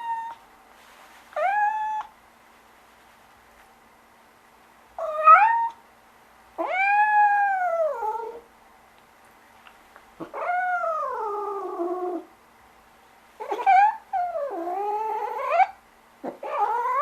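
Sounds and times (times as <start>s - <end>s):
cat meowing: 5.0s - 5.8s, 6.6s - 8.4s, 13.4s - 17.0s.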